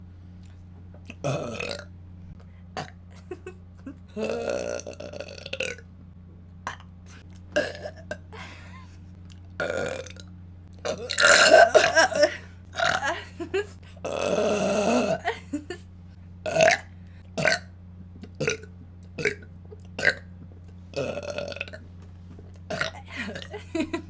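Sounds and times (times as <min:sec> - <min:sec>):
woman belching: 0:01.1 - 0:01.9, 0:02.8 - 0:05.8, 0:07.6 - 0:08.8, 0:09.6 - 0:10.2, 0:10.8 - 0:15.8, 0:16.5 - 0:17.7, 0:18.3 - 0:20.3, 0:21.0 - 0:21.8, 0:22.7 - 0:24.0.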